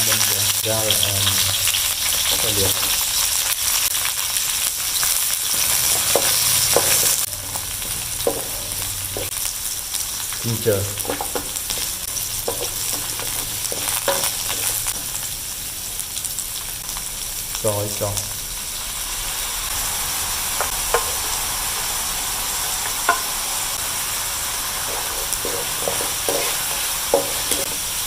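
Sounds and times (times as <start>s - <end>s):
garlic and onion sizzling in oil: 0.0s - 28.0s
utensil scraping pan: 24.8s - 28.0s.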